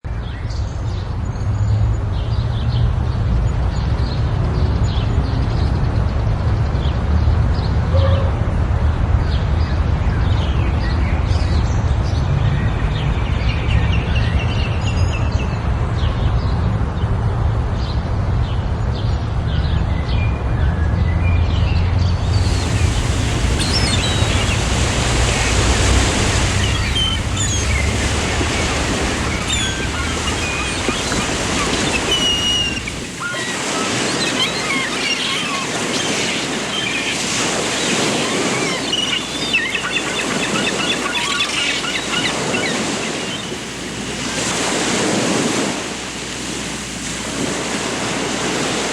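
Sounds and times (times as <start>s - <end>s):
steady rushing noise: 22.2s - 40.2s
songbirds chirping: 22.2s - 43.7s.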